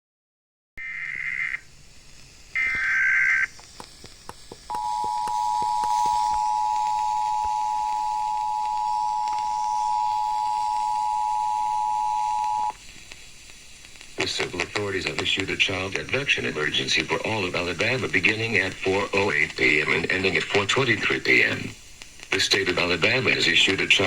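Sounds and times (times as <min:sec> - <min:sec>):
crackling clicks: 0:02.1 - 0:24.0
buzzy digital data bursts: 0:02.5 - 0:03.6, 0:04.6 - 0:12.8, 0:14.2 - 0:24.0
steady two-tone alert signal: 0:04.7 - 0:12.7.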